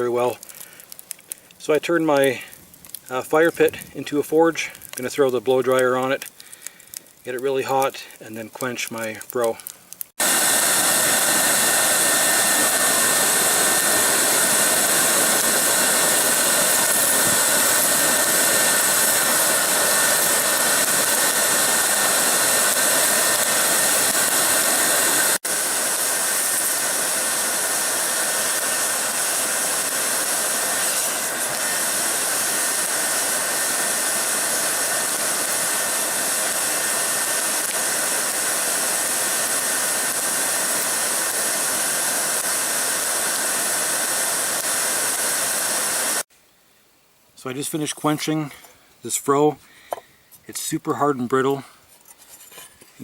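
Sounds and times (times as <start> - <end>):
blow dryer blowing air: 10.2 - 46.3.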